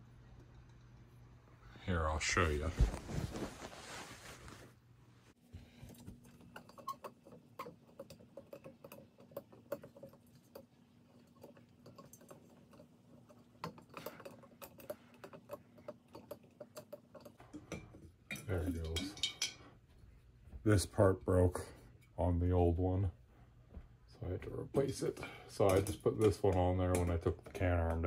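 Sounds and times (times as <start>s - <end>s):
small clicks and taps of glass: 5.9s - 19.7s, 25.6s - 28.0s.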